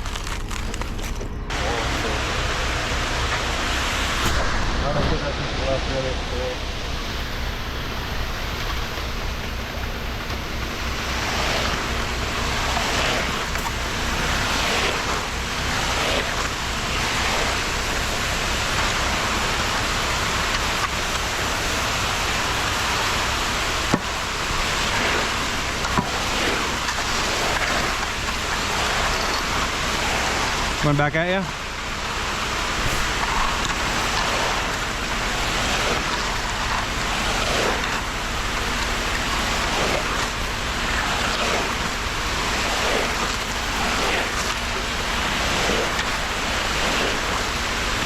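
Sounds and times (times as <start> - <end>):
concrete mixer truck running: 0.0 - 48.0.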